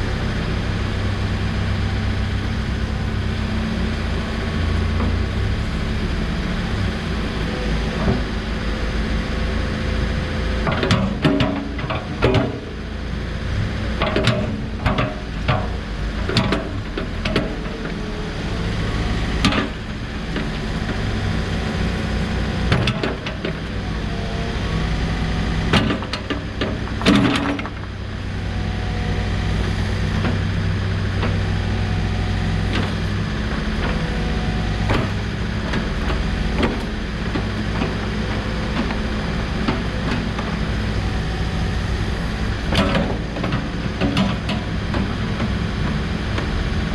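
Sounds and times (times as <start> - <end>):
diesel engine running: 0.0 - 46.9
clunks of moving arms and bucket: 10.6 - 12.7, 14.0 - 18.0, 42.6 - 46.6.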